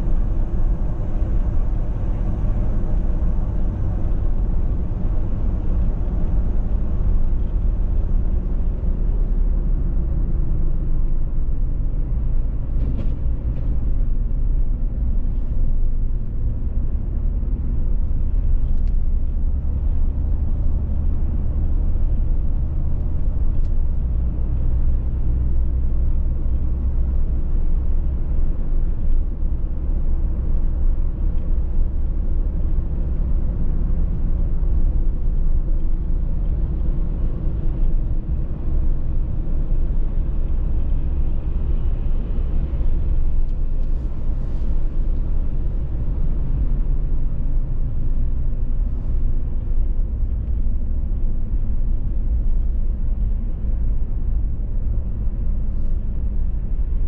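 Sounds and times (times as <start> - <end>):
car road noise drone: 0.0 - 57.0.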